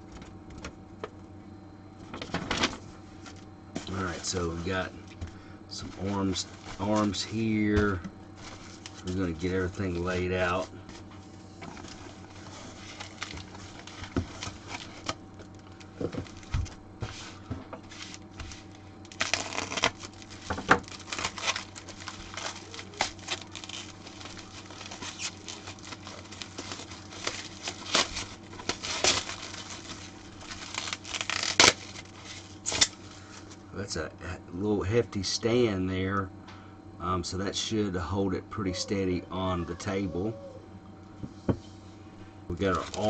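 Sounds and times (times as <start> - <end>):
steady low hum: 0.0 - 43.0
plastic packaging crinkling: 5.8 - 33.6, 42.5 - 43.0.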